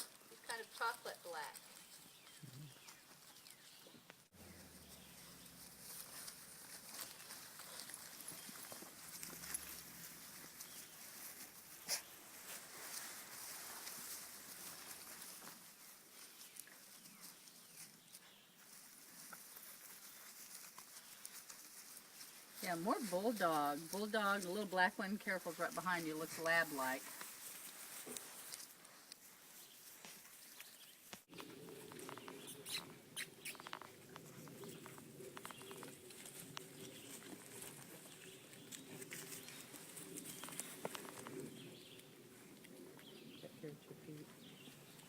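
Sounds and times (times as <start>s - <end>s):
puppies pattering and clicking: 0.0s - 18.0s, 27.1s - 43.2s.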